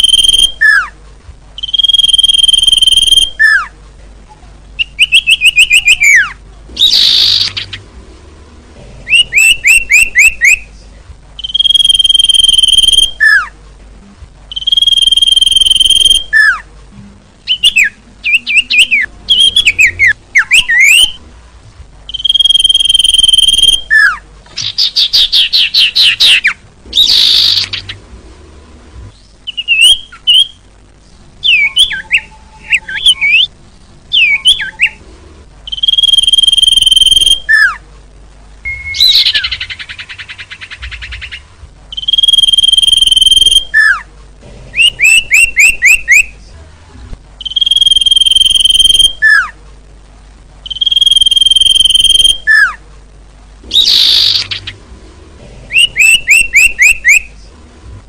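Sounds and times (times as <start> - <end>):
long even whistle: 35.7 - 37.7, 47.5 - 49.4, 50.7 - 52.7
quick bird chirps and trill: 53.7 - 54.8.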